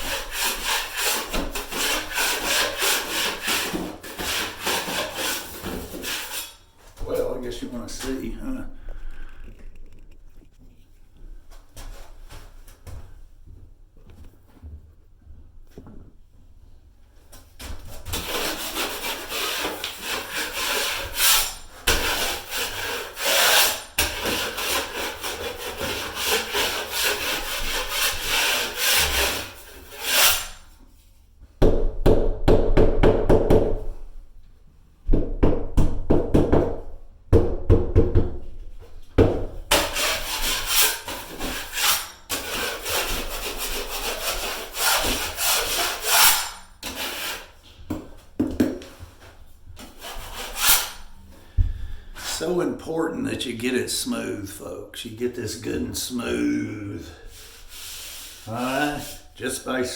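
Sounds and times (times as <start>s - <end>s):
drywall knife scraping compound: 0.0s - 13.2s, 17.4s - 31.2s, 39.2s - 54.7s, 55.3s - 59.9s.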